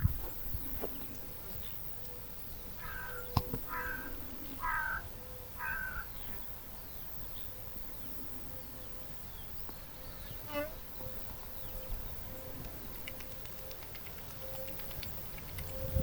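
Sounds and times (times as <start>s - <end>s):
crow cawing: 2.8s - 6.1s.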